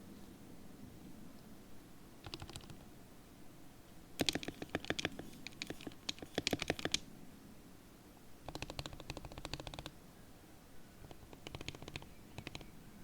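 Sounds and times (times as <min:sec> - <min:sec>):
mechanical keyboard typing: 0:02.2 - 0:02.9, 0:04.2 - 0:07.1, 0:08.4 - 0:10.0, 0:11.0 - 0:12.7.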